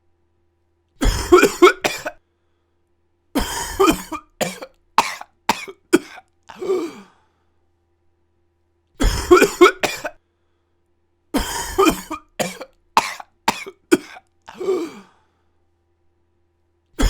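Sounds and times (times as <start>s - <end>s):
person coughing: 1.0s - 2.2s, 3.4s - 7.2s, 9.0s - 10.2s, 11.4s - 15.2s.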